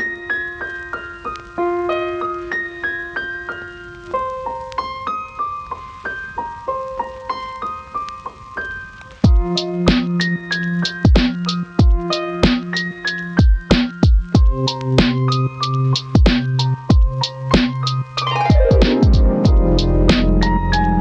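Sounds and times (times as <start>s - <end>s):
electric piano melody: 0.0s - 21.0s
drum beat: 9.2s - 15.4s, 16.0s - 20.6s.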